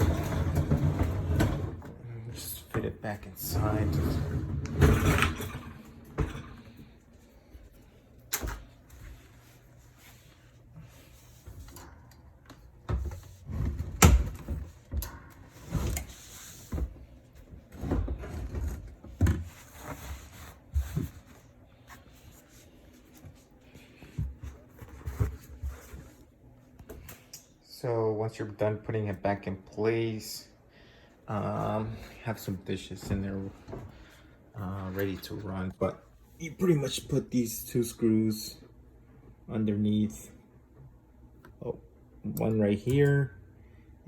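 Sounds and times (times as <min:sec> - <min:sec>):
dishwasher scraping: 0:00.0 - 0:02.0, 0:03.4 - 0:07.0.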